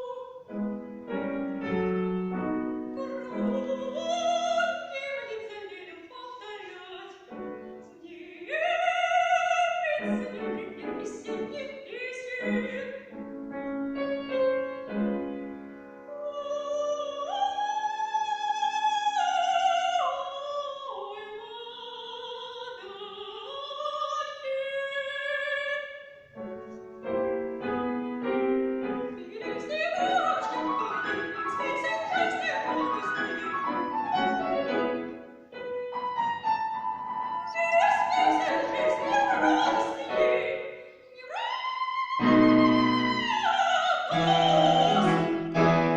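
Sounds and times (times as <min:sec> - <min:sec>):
woman singing opera: 0:00.0 - 0:00.7, 0:02.7 - 0:13.2, 0:14.2 - 0:26.3, 0:28.0 - 0:35.1, 0:37.1 - 0:45.8
piano accompaniment: 0:00.5 - 0:04.6, 0:12.4 - 0:16.3, 0:26.3 - 0:40.7, 0:42.2 - 0:45.9.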